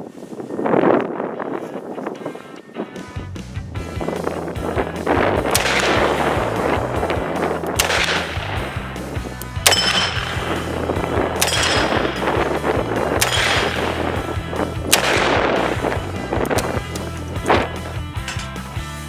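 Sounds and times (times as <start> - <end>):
background music: 2.3 - 19.0
revolver gunshots with echo: 4.6 - 17.9.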